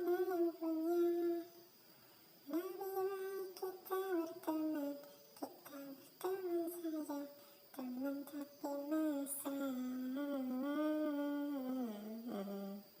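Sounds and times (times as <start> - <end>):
person singing wordless melody: 0.0 - 1.6, 2.4 - 13.0.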